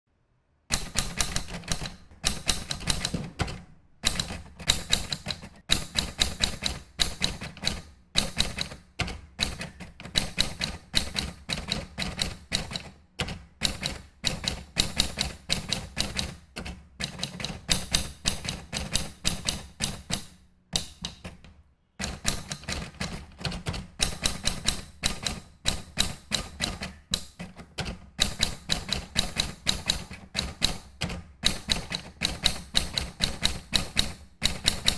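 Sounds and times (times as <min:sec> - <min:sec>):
manual typewriter key strikes: 0:00.7 - 0:34.9.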